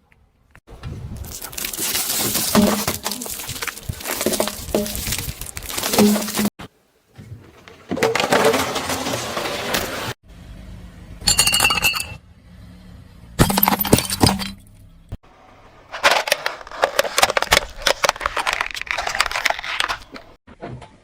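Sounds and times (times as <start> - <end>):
objects crunching under car tyres: 0.8 - 6.6, 7.2 - 10.2, 15.9 - 20.4
clinking ring: 11.2 - 12.2.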